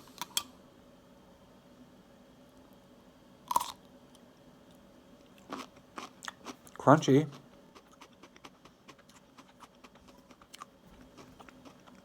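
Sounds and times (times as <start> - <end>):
crunch of biting pickle: 3.5 - 3.8, 5.4 - 12.0
faint chewing: 5.2 - 12.0.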